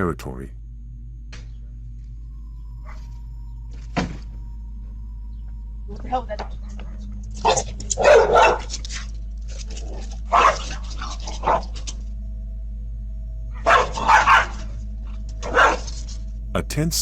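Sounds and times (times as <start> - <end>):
steady low hum: 0.0 - 9.5, 12.0 - 15.4, 16.1 - 17.0
dogs barking: 6.5 - 8.8, 10.2 - 11.8, 13.6 - 14.8, 15.4 - 15.9.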